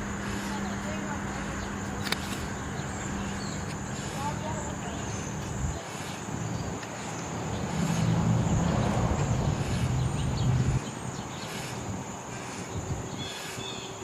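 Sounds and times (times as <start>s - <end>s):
distant propeller plane drone: 0.0s - 14.0s
high insect buzz: 0.0s - 14.0s.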